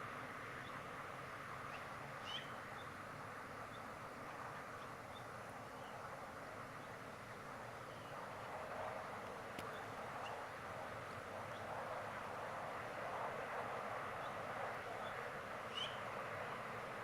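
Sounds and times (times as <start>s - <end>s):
steady outdoor hiss: 0.0s - 17.0s
faint bird chirps: 1.7s - 2.9s, 15.0s - 16.0s.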